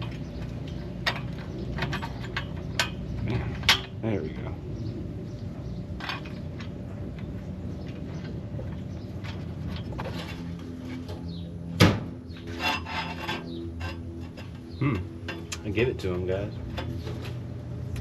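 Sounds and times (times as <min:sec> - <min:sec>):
exhaust parts clicking: 0:00.0 - 0:04.5
steady low hum: 0:00.0 - 0:18.0.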